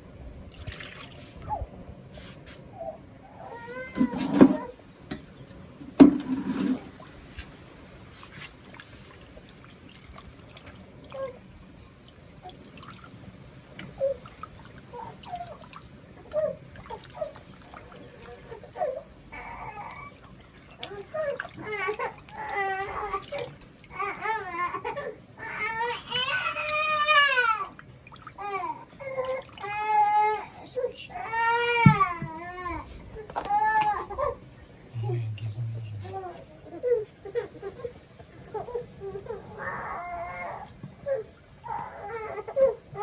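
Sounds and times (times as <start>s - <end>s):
liquid bubbling and trickling: 8.5s - 24.2s, 27.3s - 29.7s.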